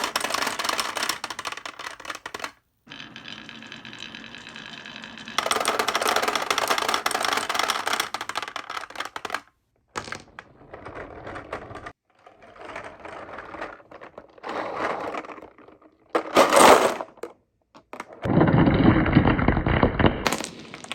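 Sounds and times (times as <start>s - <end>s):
marbles rattling on a track: 0.0s - 12.0s, 18.0s - 20.9s.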